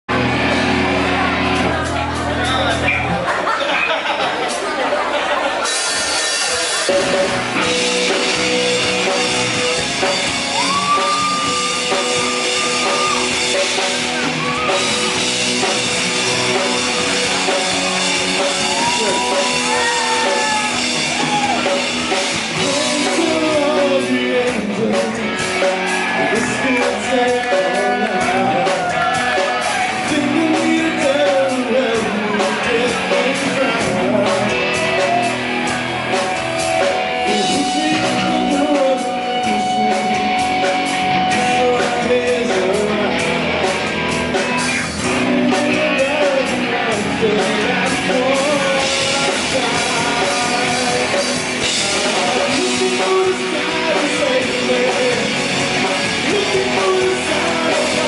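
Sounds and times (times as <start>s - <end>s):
live rock band playing: 0.1s - 58.0s.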